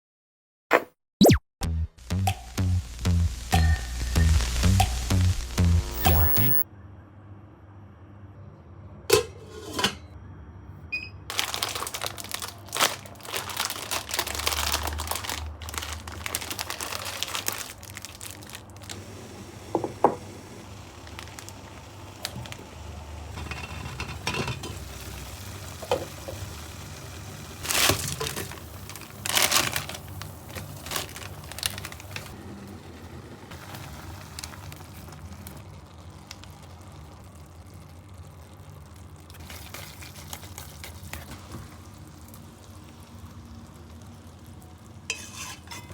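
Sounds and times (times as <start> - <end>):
plastic packaging crinkling: 11.3 - 19.0, 27.6 - 32.4, 39.3 - 42.8.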